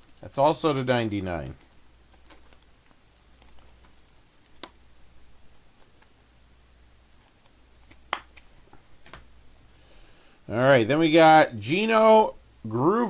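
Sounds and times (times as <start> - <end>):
faint low hum: 0.0 - 13.0
cards clicking and tapping: 0.1 - 4.8, 7.2 - 9.3.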